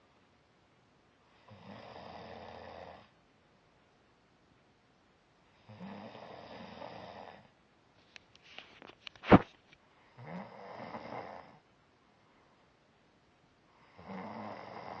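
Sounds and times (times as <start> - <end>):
person snoring: 1.4 - 3.1, 5.6 - 7.5, 10.2 - 11.6, 13.8 - 15.0.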